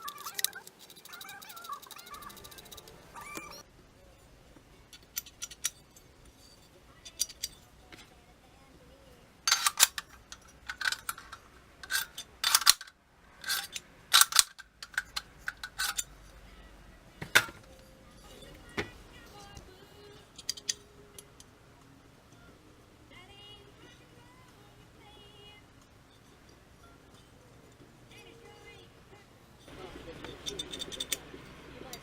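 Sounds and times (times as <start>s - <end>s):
metallic clicks of rifle parts: 4.9s - 5.8s, 9.5s - 16.1s, 20.3s - 21.5s.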